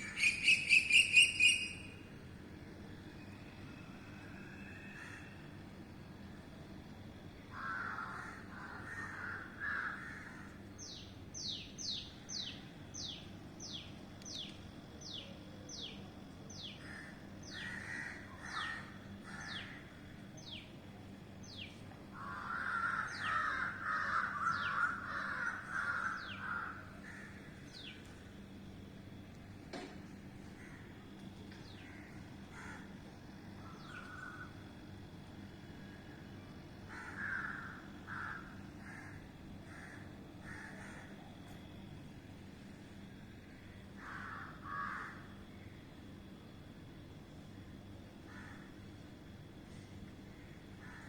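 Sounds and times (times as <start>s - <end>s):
crows cawing: 4.6s - 5.4s, 7.5s - 10.6s, 16.8s - 20.2s, 22.1s - 27.9s, 29.8s - 31.2s, 31.8s - 33.0s, 33.6s - 34.6s, 36.9s - 41.3s, 43.7s - 45.4s, 48.3s - 48.8s, 49.7s - 51.0s.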